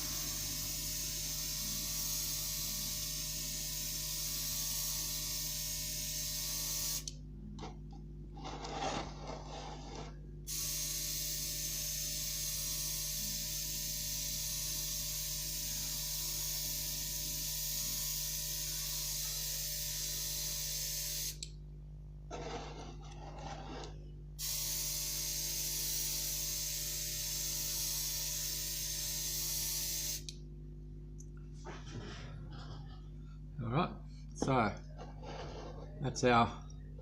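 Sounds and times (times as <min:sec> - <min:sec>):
airbrush spraying hiss: 0:00.0 - 0:07.1, 0:10.5 - 0:21.4, 0:24.4 - 0:30.3
steady low hum: 0:00.0 - 0:37.0.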